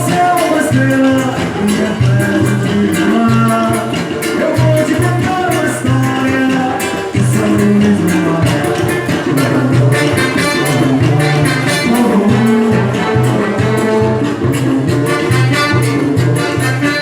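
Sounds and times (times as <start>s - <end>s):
band playing festive latin music: 0.0s - 17.0s
steady drum beat: 0.0s - 17.0s.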